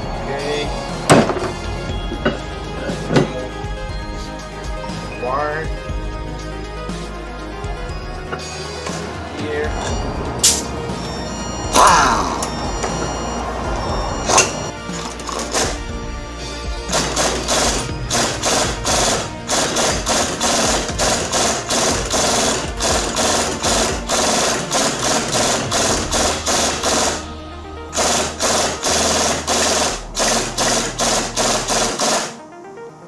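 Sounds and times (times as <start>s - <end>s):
bass line: 0.0s - 32.2s
music with fast steady beat: 0.0s - 32.7s.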